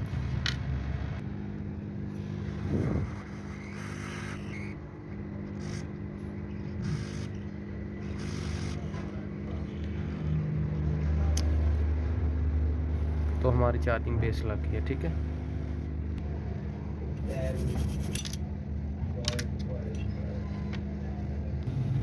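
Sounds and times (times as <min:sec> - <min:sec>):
hot air gun humming: 0:01.5 - 0:10.3.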